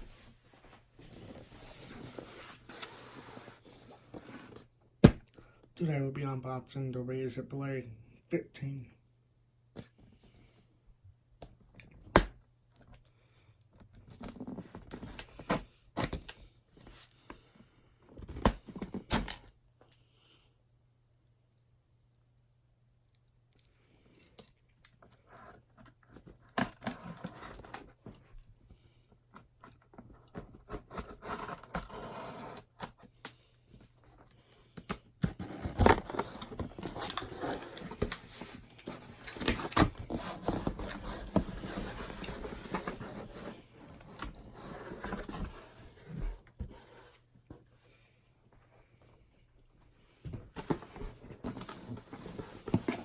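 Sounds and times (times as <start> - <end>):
packaging tearing and rustling: 35.6 - 42.5.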